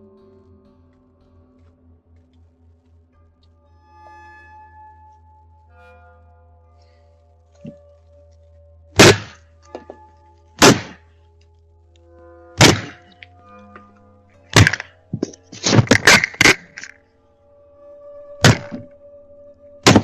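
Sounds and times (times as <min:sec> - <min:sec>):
heavy thuds: 0:18.4 - 0:18.9.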